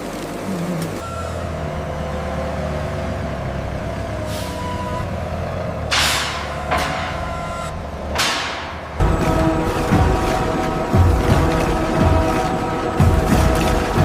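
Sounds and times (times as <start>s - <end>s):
truck engine idling: 0.0s - 14.0s.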